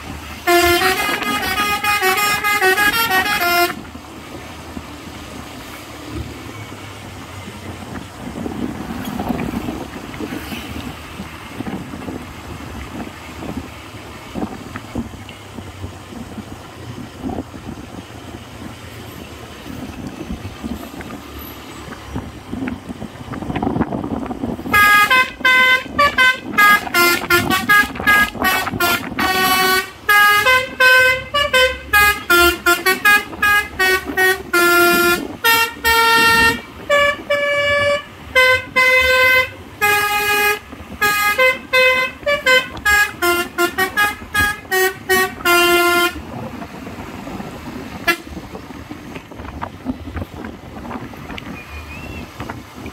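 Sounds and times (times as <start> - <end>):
engine and road rumble: 0.0 - 52.9
multi-tone truck horn melody: 0.3 - 3.9, 24.6 - 46.6, 47.9 - 48.7.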